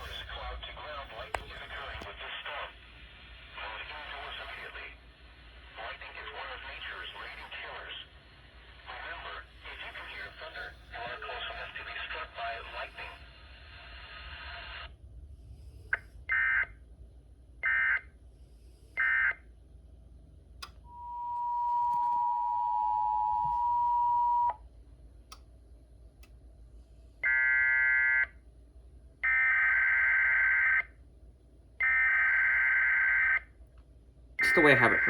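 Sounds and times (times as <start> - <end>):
digital data bursts: 34.4 - 35.0.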